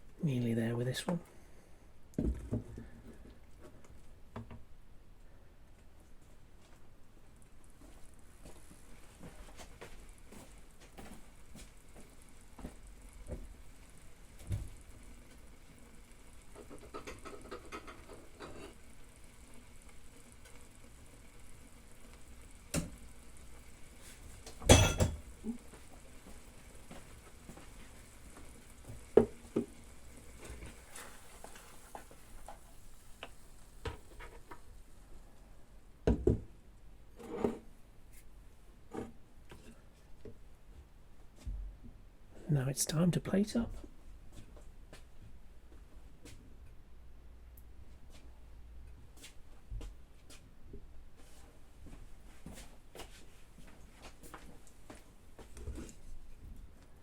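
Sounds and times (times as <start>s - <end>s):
omelette sizzling in a pan: 7.3s - 36.2s
pan clattering: 24.6s - 25.2s.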